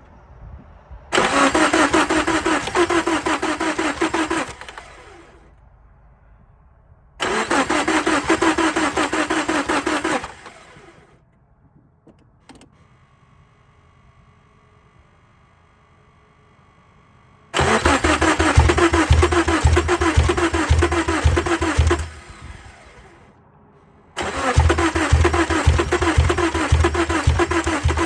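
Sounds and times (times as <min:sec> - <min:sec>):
engine starter cranking: 0:01.1 - 0:05.5, 0:07.2 - 0:11.2, 0:17.6 - 0:23.3, 0:24.2 - 0:28.0.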